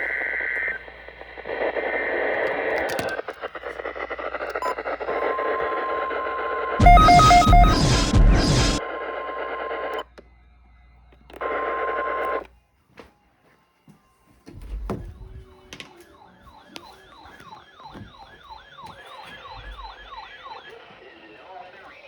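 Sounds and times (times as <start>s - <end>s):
wailing electronic siren: 6.1s - 10.1s, 16.0s - 22.0s
buzzy data tones: 6.8s - 8.8s.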